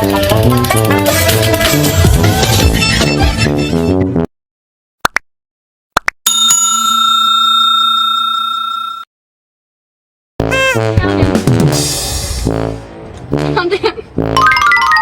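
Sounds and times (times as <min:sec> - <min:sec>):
background music: 0:00.0 - 0:04.2, 0:10.4 - 0:15.0
bell-like tone: 0:06.3 - 0:09.1.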